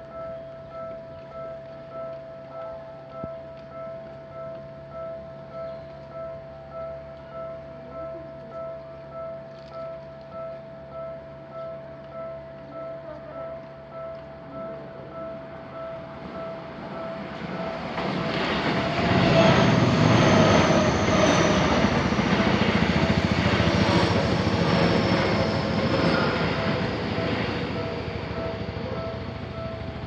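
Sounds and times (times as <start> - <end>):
train rumble and wheel noise: 0.0 - 30.0
crossing warning bell ringing: 10.4 - 30.0.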